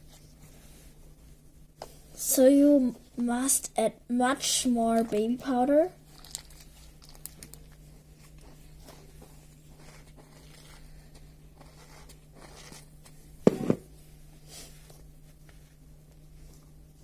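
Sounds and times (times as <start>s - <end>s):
low steady hum: 0.0s - 17.0s
slime crackling and rustling: 6.0s - 13.1s.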